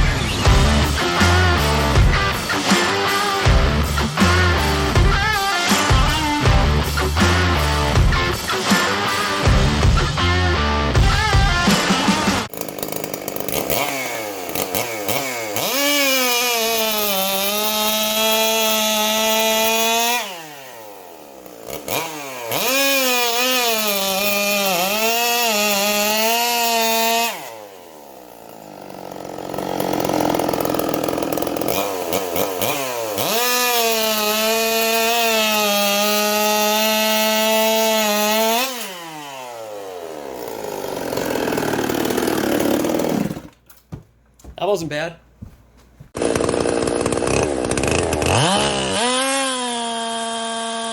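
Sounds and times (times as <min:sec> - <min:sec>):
chainsaw at full throttle: 0:00.0 - 0:43.6, 0:46.2 - 0:50.9.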